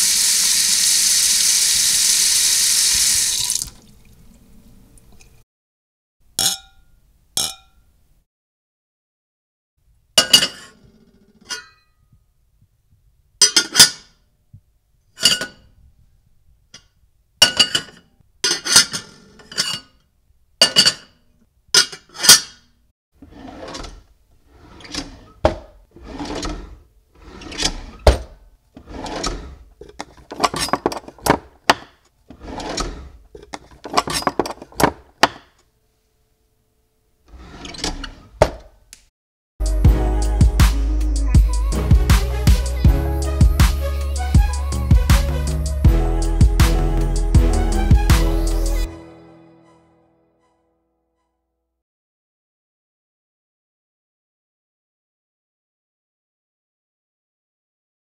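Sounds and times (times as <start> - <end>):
dishes clinking: 10.2 - 10.7, 17.4 - 20.0, 20.6 - 21.2
scraping and knocking of dishes: 10.2 - 11.8, 15.2 - 15.7, 17.4 - 20.0, 20.6 - 21.2, 24.7 - 35.6.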